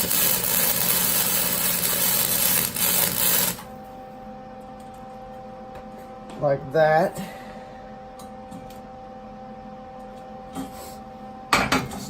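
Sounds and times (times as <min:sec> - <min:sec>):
welding arc crackling: 0:00.0 - 0:03.7
steady electrical hum: 0:00.0 - 0:12.0.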